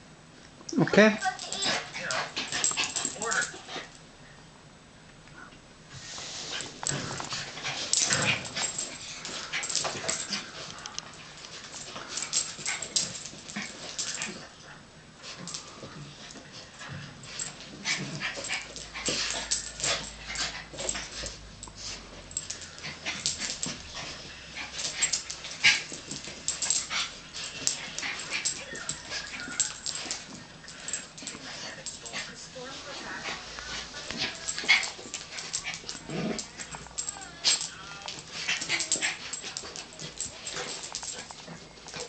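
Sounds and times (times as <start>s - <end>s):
dogs scuffling: 1.2s - 4.0s, 6.0s - 14.6s, 15.2s - 42.0s
dogs yapping: 17.3s - 32.3s, 33.2s - 42.0s.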